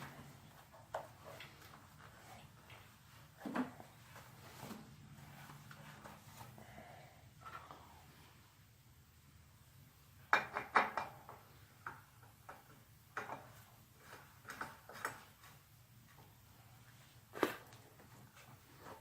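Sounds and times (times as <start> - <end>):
faint steady hum: 0.0 - 19.0
tools clinking and knocking: 10.2 - 15.6.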